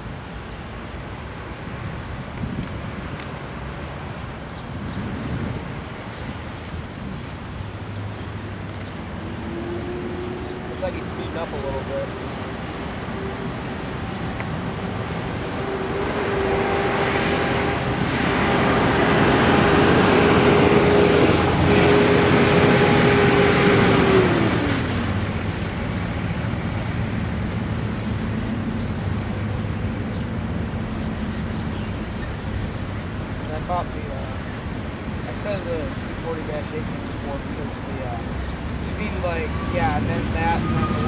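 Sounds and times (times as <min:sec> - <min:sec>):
freight train rumbling past: 0:09.0 - 0:41.0.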